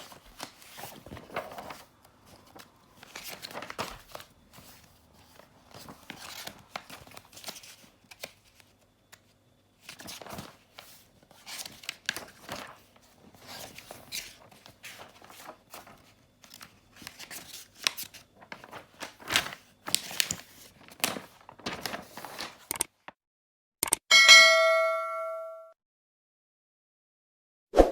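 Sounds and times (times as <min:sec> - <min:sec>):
book pages rustling: 0:00.0 - 0:22.7
bell-like ding: 0:24.1 - 0:25.8.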